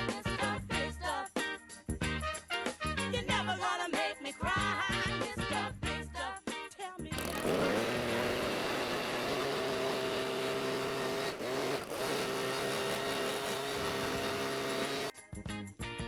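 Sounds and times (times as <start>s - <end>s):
electric power tool motor running: 7.2s - 15.1s.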